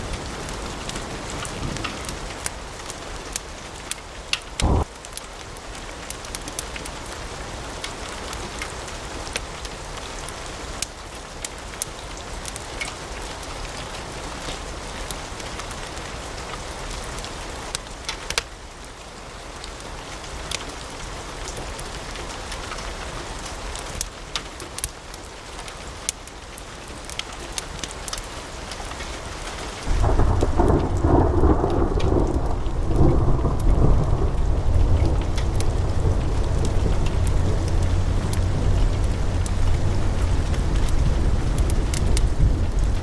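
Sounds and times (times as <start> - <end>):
wood fire crackling: 0.0 - 19.0, 19.6 - 22.8, 23.4 - 43.0
deep rumble: 29.9 - 43.0.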